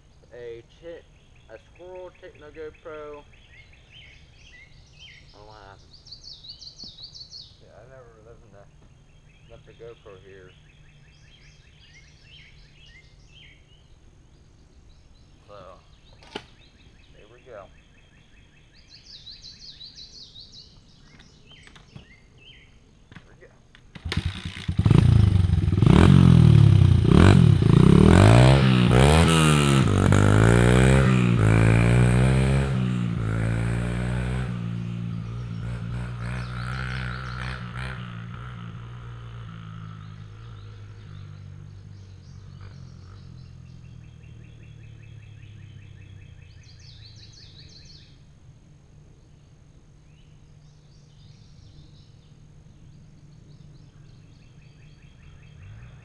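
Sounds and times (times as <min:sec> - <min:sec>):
dirt bike engine revving: 0:23.9 - 0:47.0.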